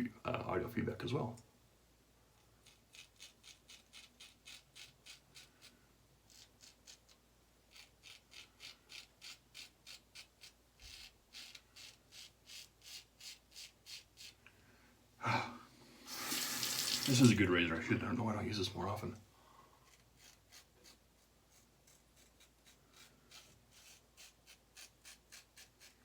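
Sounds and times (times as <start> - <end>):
razor scraping stubble: 2.6 - 5.7, 6.3 - 14.4, 19.8 - 26.0.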